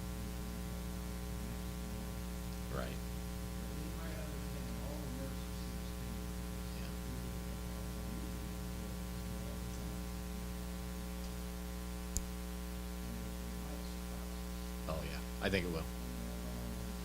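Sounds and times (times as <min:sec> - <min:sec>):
electrical mains hum and hiss: 0:00.0 - 0:17.0
faint distant voices: 0:00.2 - 0:10.8, 0:12.7 - 0:17.0.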